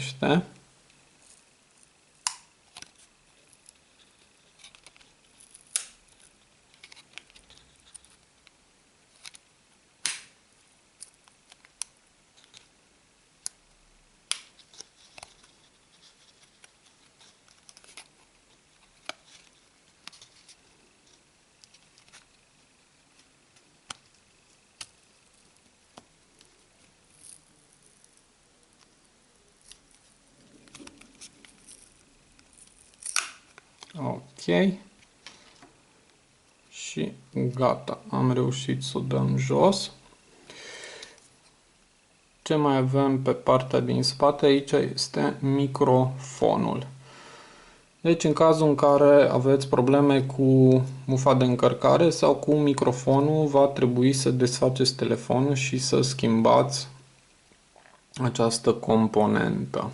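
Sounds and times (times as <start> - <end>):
plastic card scraping: 2.2 - 8.3, 14.3 - 22.4, 23.1 - 34.0.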